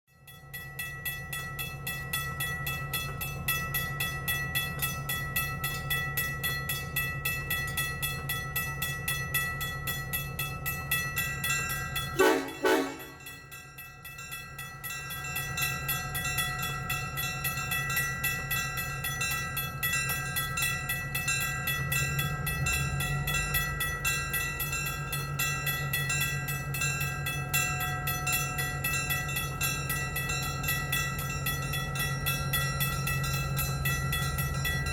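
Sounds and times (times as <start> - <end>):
diesel locomotive engine rumbling: 0.4 - 34.9
locomotive horn blast: 12.2 - 13.4.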